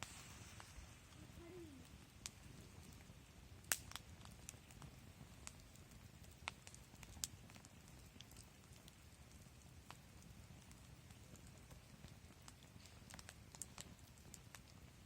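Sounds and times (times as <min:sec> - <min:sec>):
wood fire crackling: 0:00.0 - 0:15.0.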